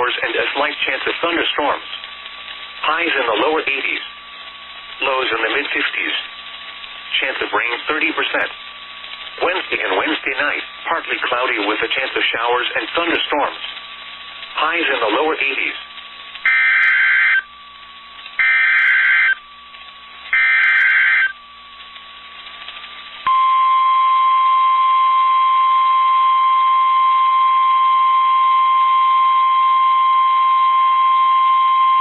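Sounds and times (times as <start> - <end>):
digital data bursts screeching: 16.4 - 17.5, 18.4 - 19.4, 20.3 - 21.4
steady warning alarm tone: 16.4 - 22.0, 23.2 - 32.0.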